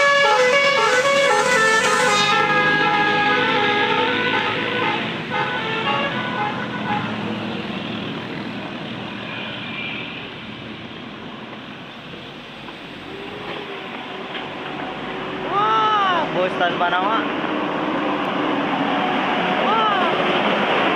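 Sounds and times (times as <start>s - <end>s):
bus horn melody: 0.0s - 7.5s
bus engine and tyre noise: 0.0s - 20.9s.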